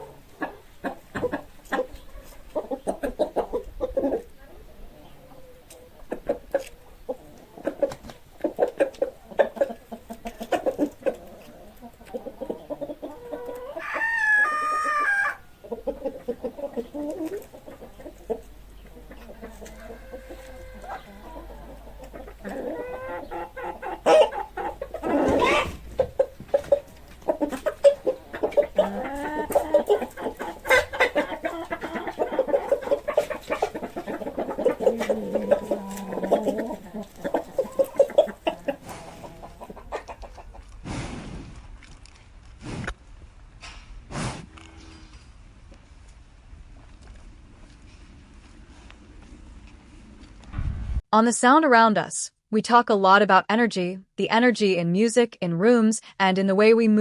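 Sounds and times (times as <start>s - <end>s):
chickens clucking: 0.0s - 41.0s
rooster crowing: 13.7s - 15.5s.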